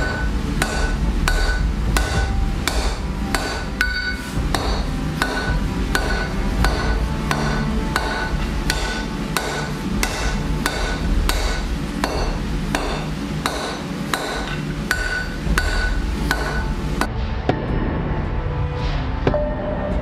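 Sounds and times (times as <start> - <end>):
hammer striking steel on anvil: 0.0 - 17.6.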